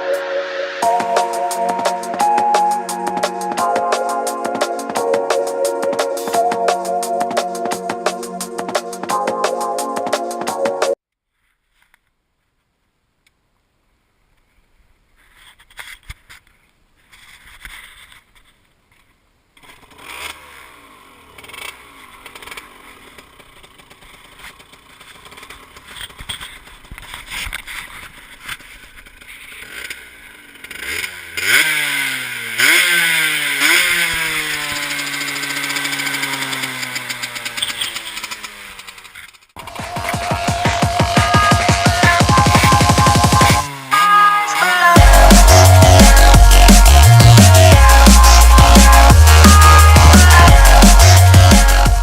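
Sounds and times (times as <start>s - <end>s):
motorbike engine revving: 19.6s - 26.6s, 29.1s - 52.0s
motorbike engine idling: 21.1s - 26.9s, 28.2s - 43.9s.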